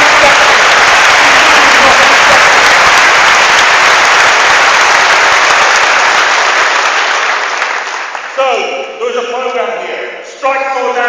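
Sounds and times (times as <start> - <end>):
audience applauding: 0.0 - 8.6
audience cheering: 0.0 - 8.6.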